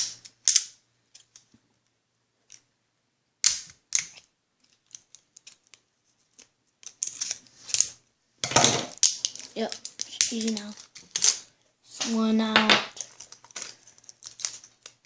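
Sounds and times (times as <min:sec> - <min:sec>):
scissors cutting plastic packaging: 0:09.3 - 0:11.4.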